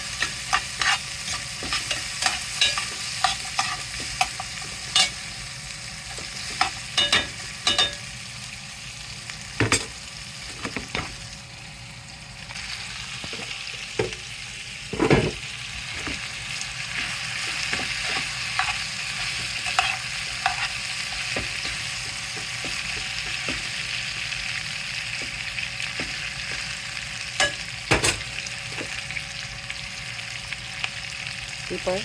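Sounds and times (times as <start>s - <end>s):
meat sizzling in a pan: 0.0s - 32.0s
knocks on the pan: 27.9s - 28.3s.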